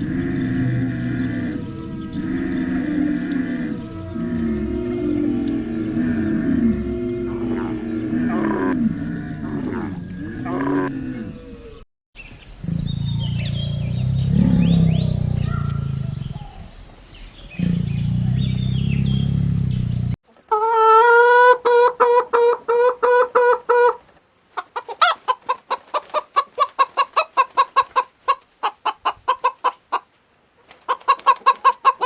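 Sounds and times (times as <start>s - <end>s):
low rumbling animal call: 0.0s - 11.8s, 12.5s - 21.5s
animal calls bending up and down: 12.7s - 16.7s
quick clucking: 20.3s - 32.0s.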